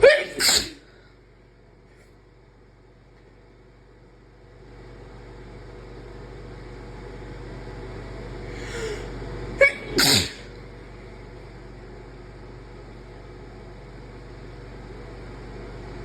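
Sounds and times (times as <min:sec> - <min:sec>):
person sneezing: 0:00.0 - 0:01.0, 0:08.6 - 0:10.6.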